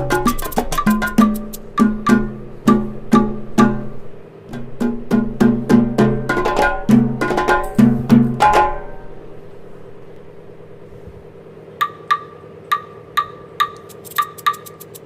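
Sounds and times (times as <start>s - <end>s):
regular ticking: 0.0s - 3.8s, 11.8s - 15.0s
plucked percussive melody: 0.0s - 9.1s, 11.8s - 15.0s.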